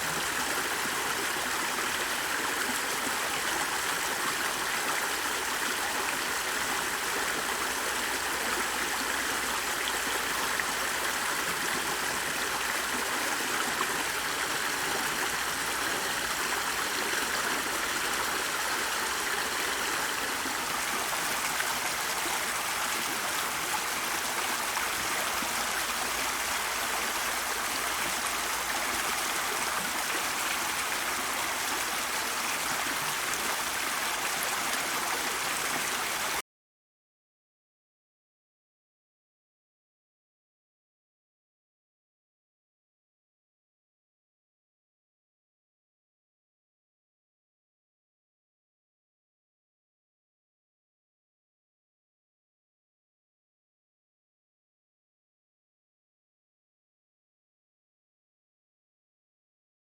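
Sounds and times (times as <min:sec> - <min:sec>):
stream water rushing: 0:00.0 - 0:36.4.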